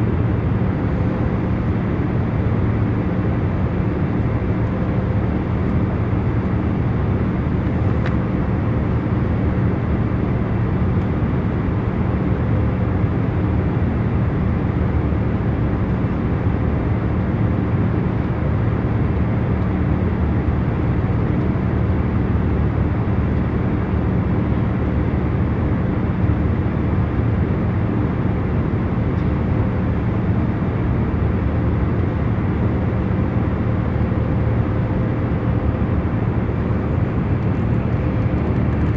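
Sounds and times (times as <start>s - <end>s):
low multi-tone hum: 0.0s - 38.9s
engines and rushing air drone: 25.2s - 38.9s.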